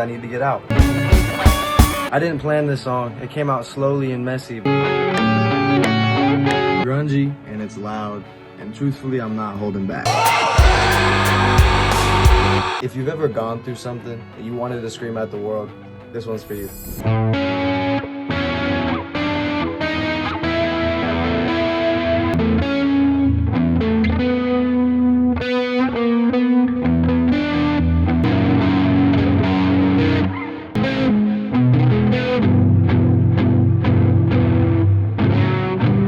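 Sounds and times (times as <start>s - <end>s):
distorted electric guitar chords: 0.7s - 2.1s, 10.1s - 12.8s, 26.9s - 36.0s.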